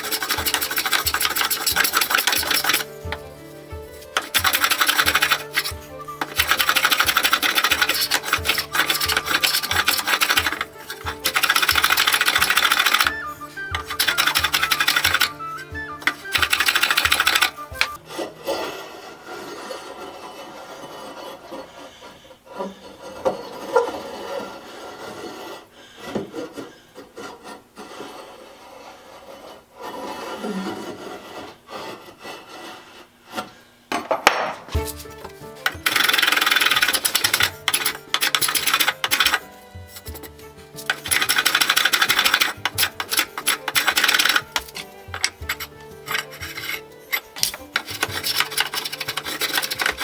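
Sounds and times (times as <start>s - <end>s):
wooden knocks and handling: 0.0s - 18.0s, 33.9s - 50.0s
saw rasping through wood: 0.0s - 33.5s, 34.7s - 50.0s.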